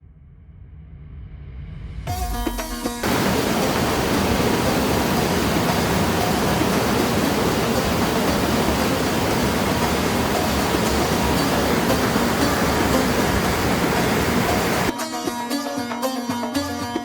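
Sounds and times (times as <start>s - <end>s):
waterfall rushing: 3.0s - 14.9s.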